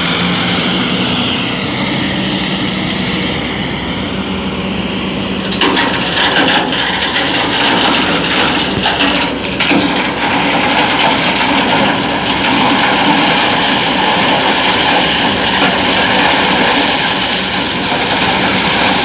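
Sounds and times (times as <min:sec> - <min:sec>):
diesel engine running: 0:00.0 - 0:19.0
sand pouring into truck bed: 0:05.6 - 0:19.0.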